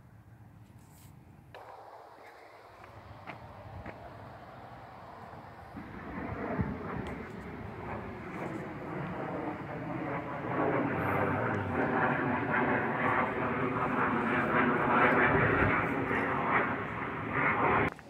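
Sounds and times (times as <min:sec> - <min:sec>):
wind or road noise hiss: 0:00.6 - 0:05.9.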